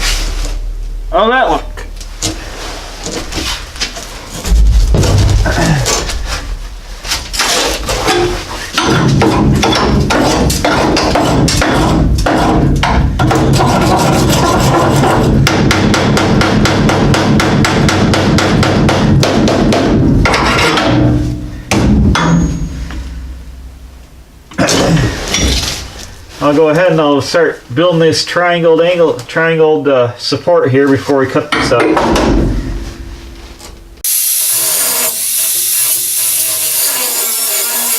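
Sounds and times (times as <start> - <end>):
hammering on sheet metal: 8.0 - 23.4.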